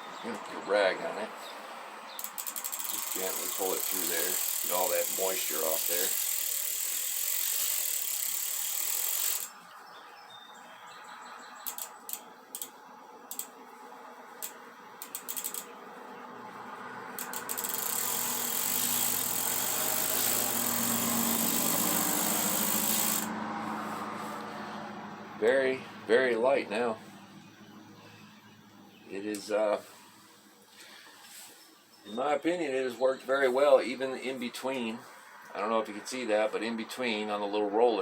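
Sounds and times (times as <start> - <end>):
rag rubbing bicycle chain: 2.2 - 9.5, 14.4 - 15.7, 17.2 - 23.3
sharp chain clicks: 2.2 - 9.6, 11.6 - 12.7, 13.3 - 13.6, 14.4 - 15.8, 17.2 - 23.3.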